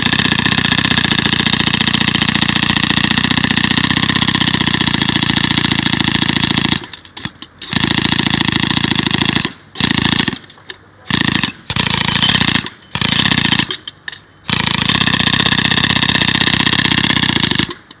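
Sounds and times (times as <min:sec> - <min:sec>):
loud motor running: 0:00.0 - 0:06.8.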